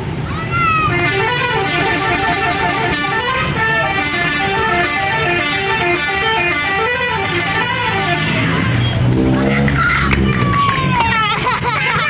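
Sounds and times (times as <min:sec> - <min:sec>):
bus musical horn melody: 0:00.8 - 0:09.0.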